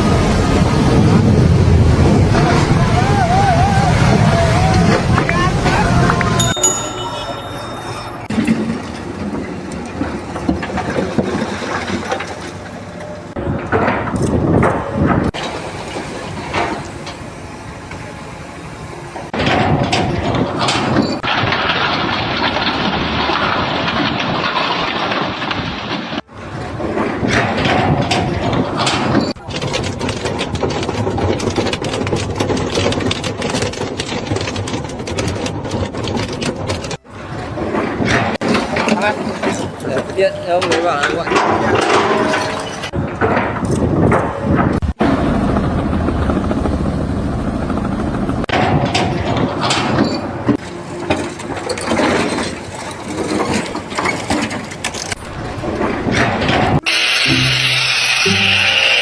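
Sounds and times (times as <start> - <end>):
machinery clattering: 51.1 - 59.0.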